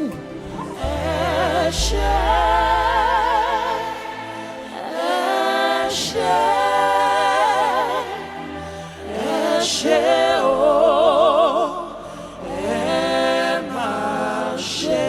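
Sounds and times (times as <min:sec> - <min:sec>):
choir singing worship song: 0:00.0 - 0:15.0
sustained low bass notes: 0:00.4 - 0:04.4.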